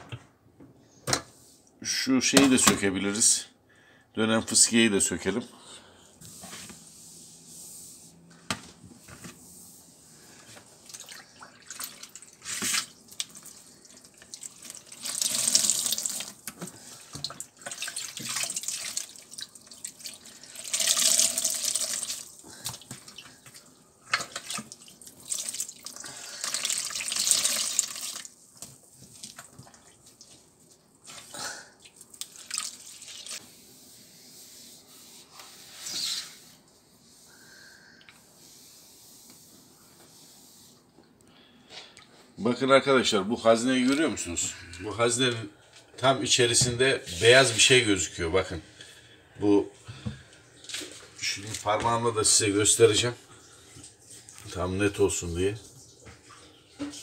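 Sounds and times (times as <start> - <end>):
water splashing and trickling: 10.8 - 28.4, 31.8 - 33.4, 52.8 - 57.0.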